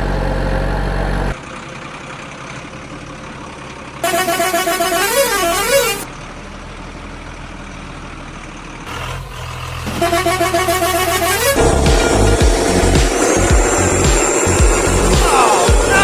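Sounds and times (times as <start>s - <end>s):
steady engine rumble: 0.0s - 16.0s
loud electronic horn tone: 4.0s - 6.0s, 9.9s - 16.0s.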